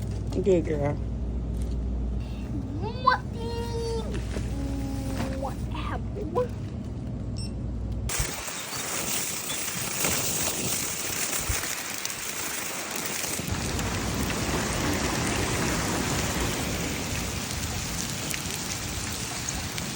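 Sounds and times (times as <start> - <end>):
heavy rain on hard surfaces: 8.1 - 19.9.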